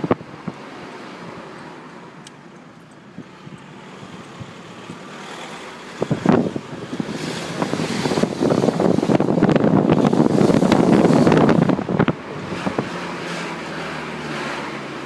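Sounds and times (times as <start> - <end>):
car engine running: 0.0 - 15.0
rushing noise: 3.1 - 15.0.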